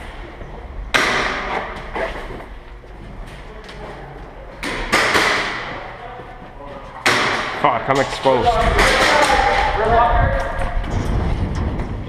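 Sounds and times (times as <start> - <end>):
sharp knocks echoing in hall: 0.0 - 2.4, 4.5 - 6.0, 7.0 - 12.0.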